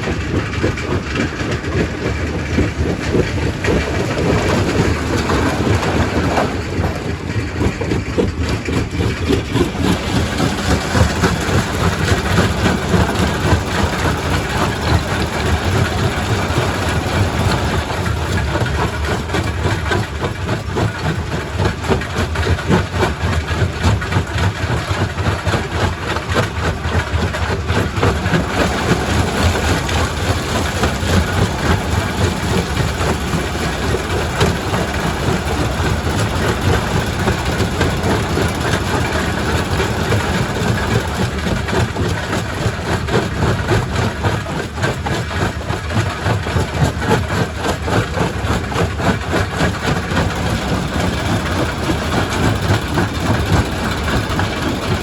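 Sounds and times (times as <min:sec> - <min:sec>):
heavy machinery drone: 0:00.0 - 0:20.5, 0:26.9 - 0:42.7, 0:48.1 - 0:55.0.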